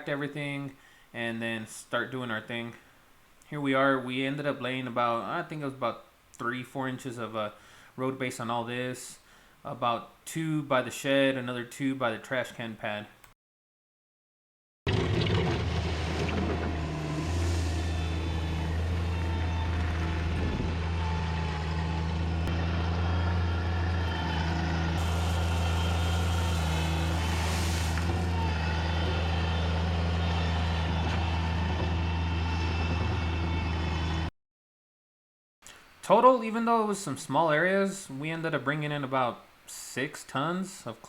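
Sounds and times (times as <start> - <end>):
construction machine engine humming: 15.2 - 34.3.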